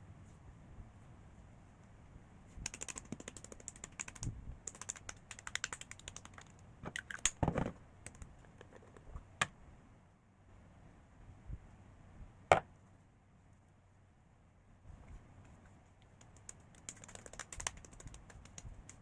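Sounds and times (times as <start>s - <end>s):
keyboard typing clicks: 2.6s - 6.5s.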